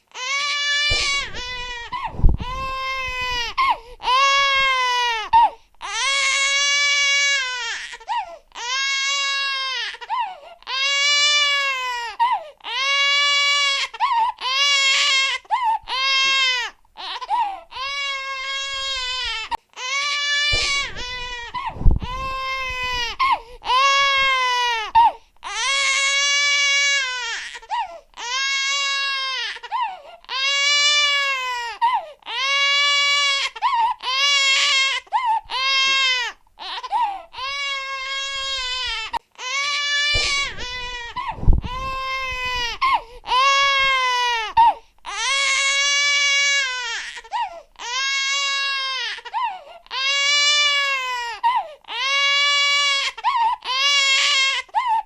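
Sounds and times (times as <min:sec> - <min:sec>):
baby crying: 0:00.1 - 0:55.0
low bump: 0:00.9 - 0:03.8, 0:20.5 - 0:24.4, 0:40.2 - 0:43.0.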